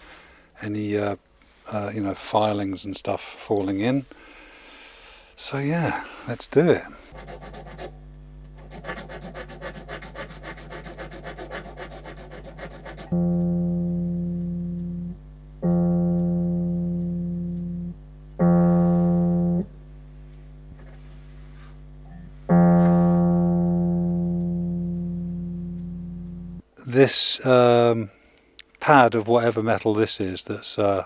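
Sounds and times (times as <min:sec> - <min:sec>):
metal file rasping on metal: 0:07.1 - 0:08.0, 0:08.6 - 0:13.2
electric keyboard note ringing: 0:11.0 - 0:26.6.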